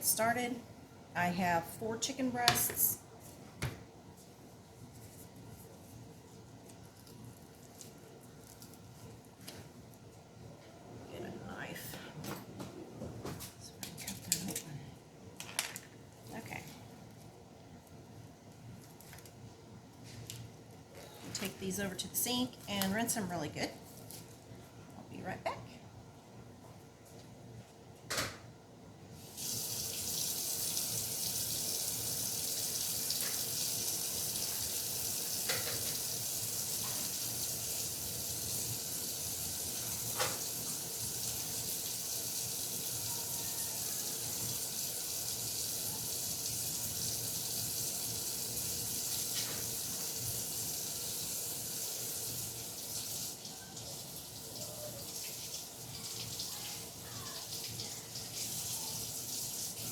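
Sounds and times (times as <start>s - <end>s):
faucet running water: 29.2s - 59.9s.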